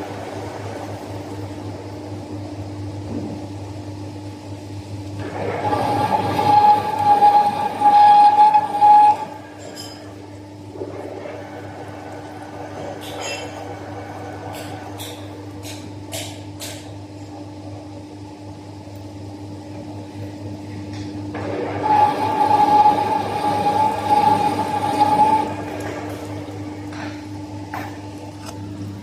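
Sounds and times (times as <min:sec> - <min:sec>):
high-pitched machine squeal: 0:05.6 - 0:10.0, 0:21.8 - 0:25.7
excavator diesel engine humming: 0:21.6 - 0:26.9.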